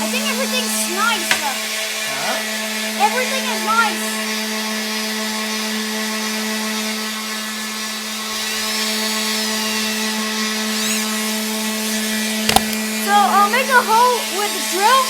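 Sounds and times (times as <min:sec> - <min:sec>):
power tool motor humming: 0:00.0 - 0:15.0
sharp clicks: 0:12.3 - 0:12.9.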